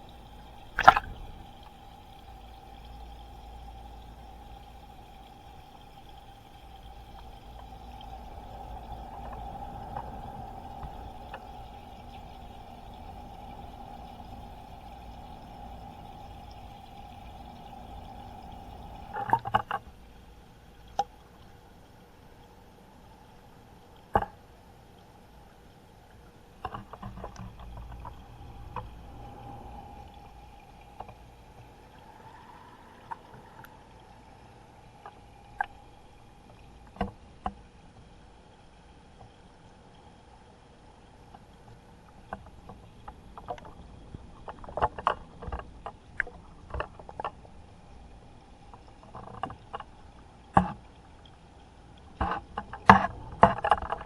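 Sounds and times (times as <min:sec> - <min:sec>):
water sloshing and splashing in tank: 0:00.0 - 0:21.5
faint hum: 0:00.0 - 0:54.0.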